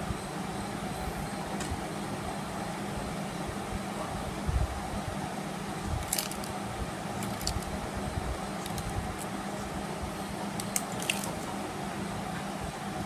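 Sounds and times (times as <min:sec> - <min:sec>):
fan hum: 0:00.0 - 0:13.0.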